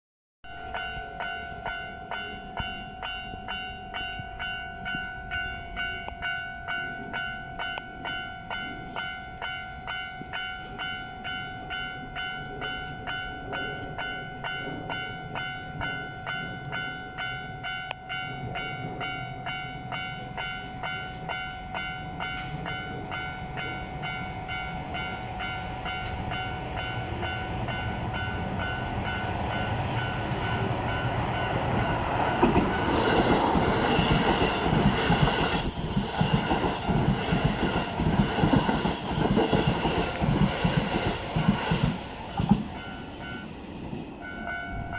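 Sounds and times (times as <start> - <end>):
approaching train rumble: 0.5 - 44.9
level crossing bell ringing: 44.2 - 44.9.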